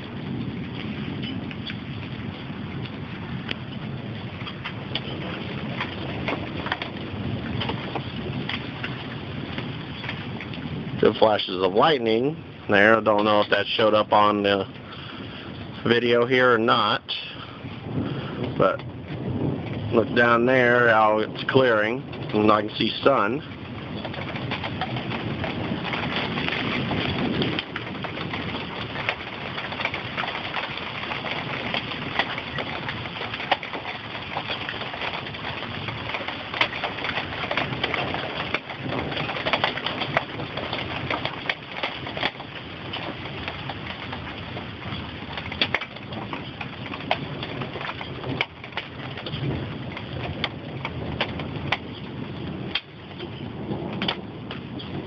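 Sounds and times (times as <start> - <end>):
raindrops tapping sheet metal: 0.0 - 55.0
steady rain falling: 0.0 - 55.0.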